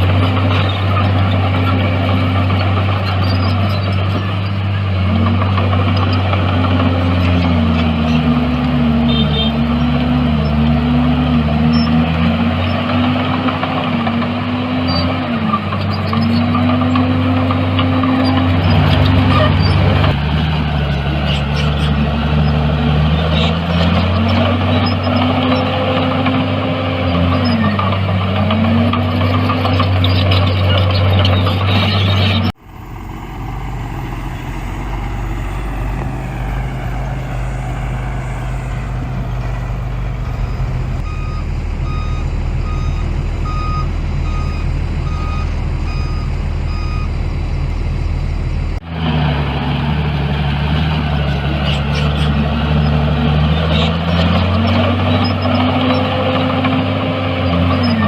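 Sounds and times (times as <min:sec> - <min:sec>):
heavy machinery diesel engines: 0:00.0 - 0:58.0
reversing alarm beeping: 0:32.6 - 0:47.8.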